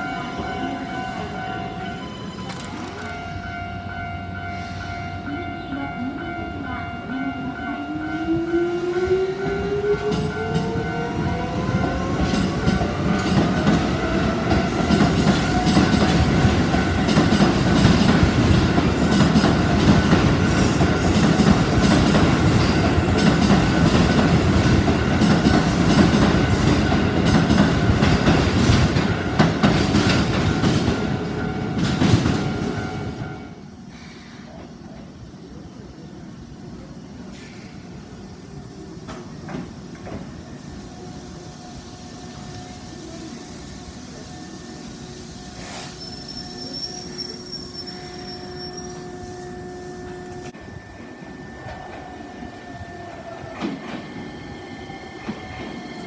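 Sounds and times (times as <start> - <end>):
train wheels clicking over rail joints: 2.0 - 3.3, 11.8 - 33.1.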